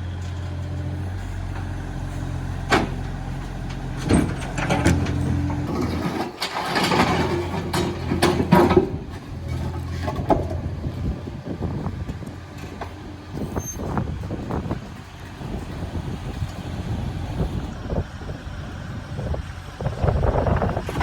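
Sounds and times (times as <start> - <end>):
construction machine engine running: 0.0 - 21.0
concrete slabs knocking and clattering: 3.7 - 10.8.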